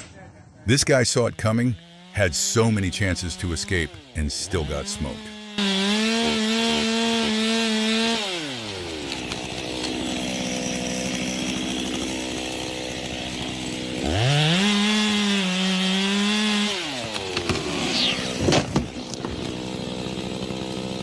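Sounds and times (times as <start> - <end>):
chainsaw engine revving and idling: 1.2 - 21.0.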